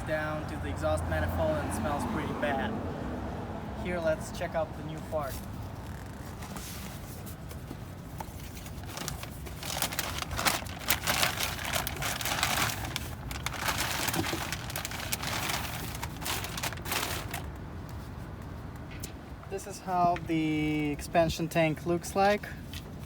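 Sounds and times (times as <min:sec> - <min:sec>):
packaging crinkling and rustling: 0:08.1 - 0:17.5.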